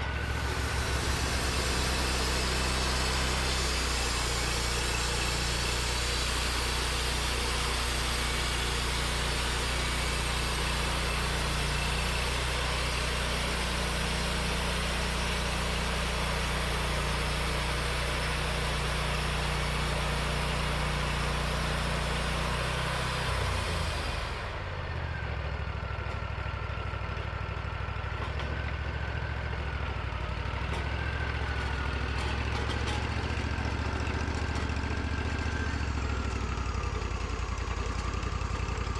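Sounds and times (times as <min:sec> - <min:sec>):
band saw blade cutting log: 0:00.0 - 0:24.6
sawmill engine running: 0:00.0 - 0:38.9.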